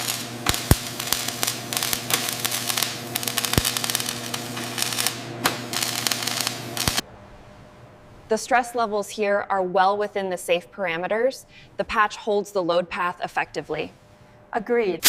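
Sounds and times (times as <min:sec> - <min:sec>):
crackling hiss with clicks: 0:00.0 - 0:07.0
electrical hum: 0:00.0 - 0:15.0.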